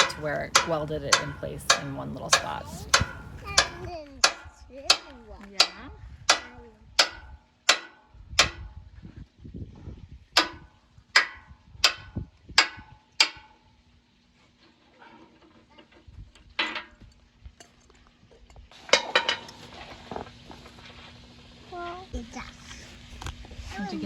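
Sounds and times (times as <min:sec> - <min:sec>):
hammer striking metal: 0:00.0 - 0:05.0, 0:05.6 - 0:08.6.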